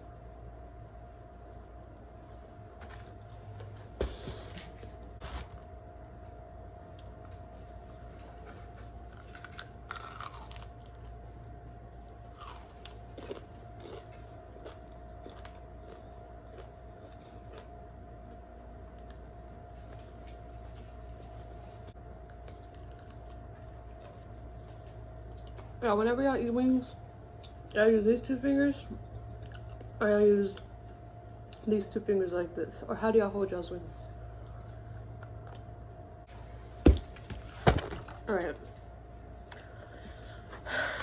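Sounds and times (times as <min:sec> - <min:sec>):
faint hum: 0:00.0 - 0:41.0
chewing chicken wings: 0:08.1 - 0:11.2, 0:12.2 - 0:17.8.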